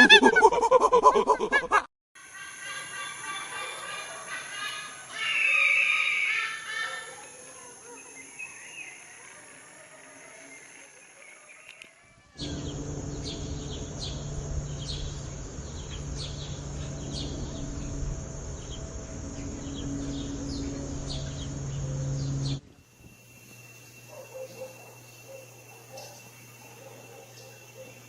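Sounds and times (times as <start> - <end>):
small birds chirping: 10.0 - 28.0
steady low hum: 12.4 - 28.0.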